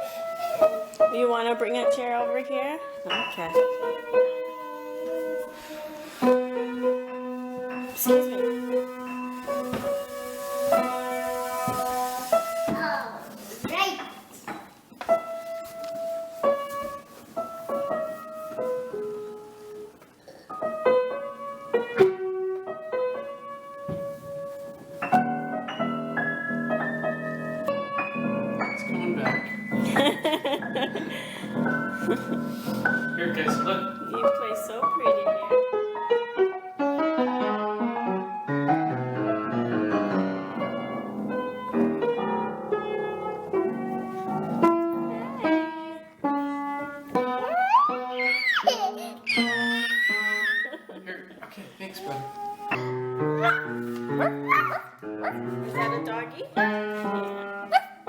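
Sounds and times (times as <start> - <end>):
slow piano melody: 0.0 - 13.5, 14.4 - 50.8, 52.0 - 58.0.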